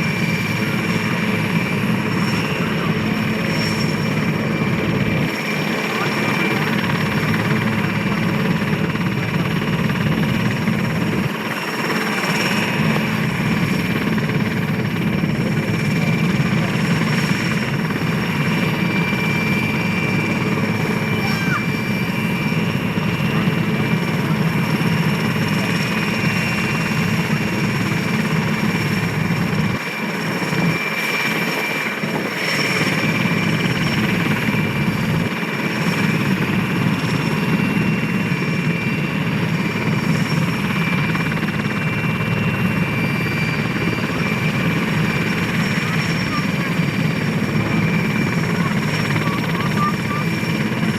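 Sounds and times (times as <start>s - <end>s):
helicopter rotor noise: 0.0s - 50.9s
helicopter turbine whine: 0.0s - 50.9s.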